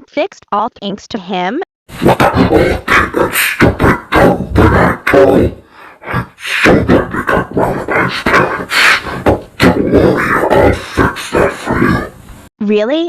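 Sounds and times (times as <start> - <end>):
cartoon voice babbling: 9.6 - 12.2.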